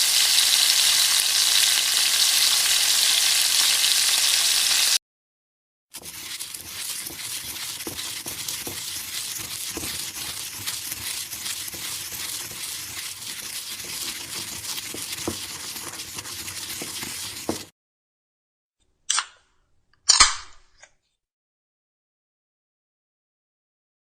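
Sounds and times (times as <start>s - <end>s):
food sizzling in a pan: 0.0s - 5.0s, 6.0s - 17.7s.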